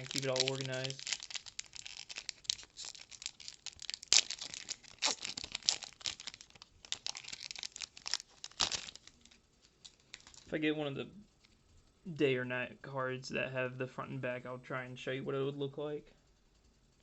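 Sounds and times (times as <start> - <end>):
cards and packaging rustling: 0.0 - 10.6.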